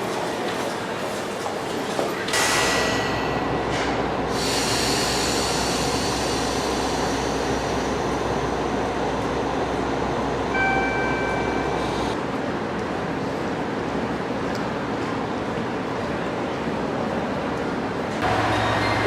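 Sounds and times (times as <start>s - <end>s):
diesel train running: 2.4s - 14.0s, 18.0s - 19.0s.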